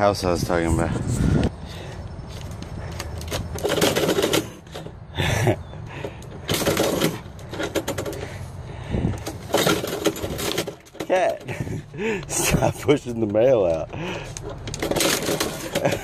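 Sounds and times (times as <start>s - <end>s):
letterbox flap rattling: 3.1s - 5.0s, 6.1s - 8.4s, 9.1s - 11.8s, 14.4s - 16.0s.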